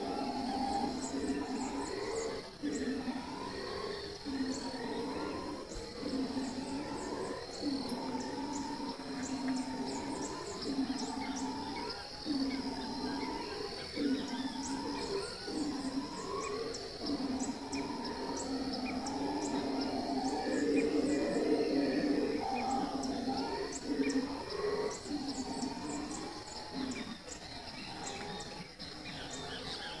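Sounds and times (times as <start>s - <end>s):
birds chirping: 0.0s - 30.0s
howler monkeys roaring: 0.0s - 30.0s.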